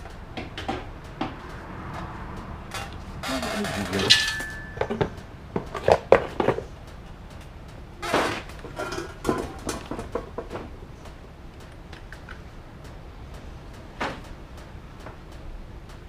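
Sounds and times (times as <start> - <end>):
metal parts knocking and clinking: 3.9 - 5.2.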